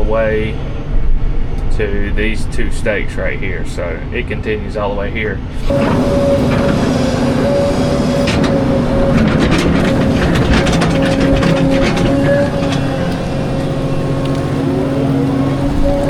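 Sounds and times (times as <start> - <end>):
excavator engine droning: 0.0 - 16.0
bucket clanking against rock: 8.2 - 14.6.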